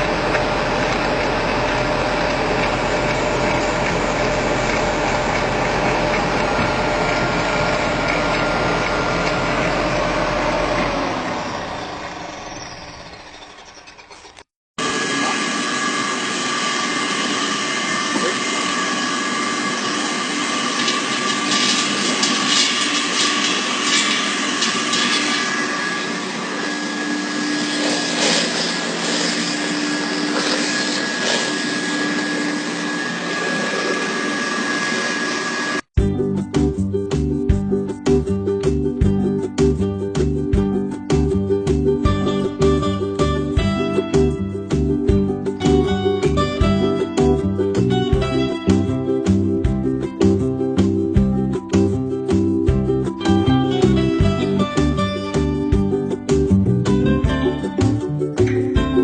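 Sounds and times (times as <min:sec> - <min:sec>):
electric machine humming: 0:00.0 - 0:36.3
second machine running: 0:00.0 - 0:36.6, 0:38.6 - 0:59.0.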